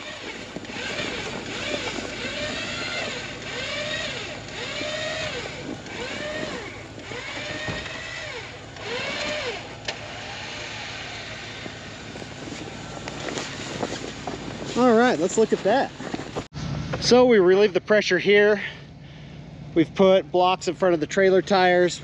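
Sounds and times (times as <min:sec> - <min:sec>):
winch motor whining: 0:00.0 - 0:17.0.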